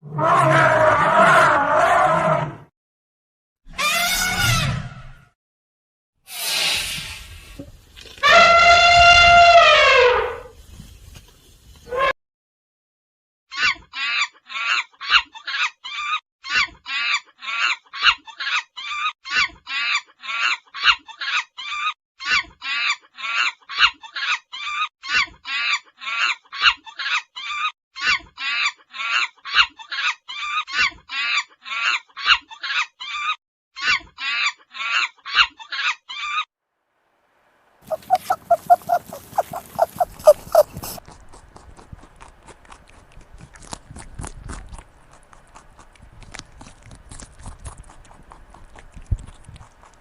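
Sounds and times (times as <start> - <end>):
animal short sharp calls: 37.8 - 41.0.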